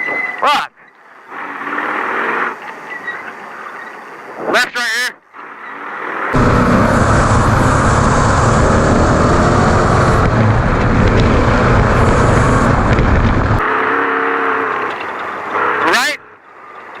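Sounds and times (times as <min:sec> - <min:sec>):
truck engine revving: 0:06.4 - 0:14.6.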